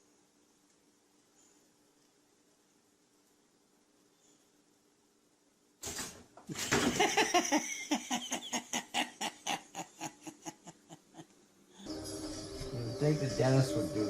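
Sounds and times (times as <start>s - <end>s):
person laughing: 6.5s - 11.3s.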